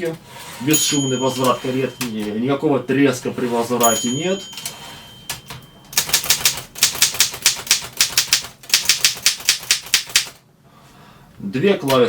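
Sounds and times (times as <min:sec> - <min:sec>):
typewriter typing: 0:04.0 - 0:10.4.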